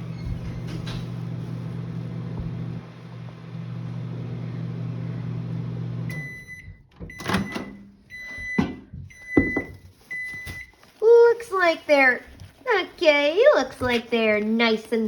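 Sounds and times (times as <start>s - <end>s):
microwave oven humming: 0.0s - 10.6s
microwave high beeps: 6.0s - 10.7s.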